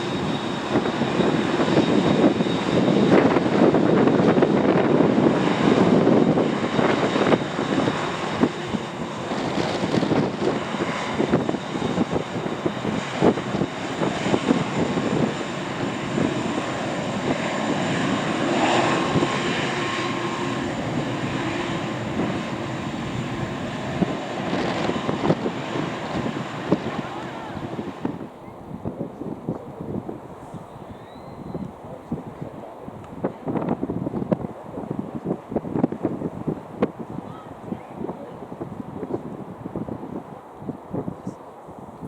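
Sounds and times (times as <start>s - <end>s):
jet engines droning: 0.0s - 42.0s.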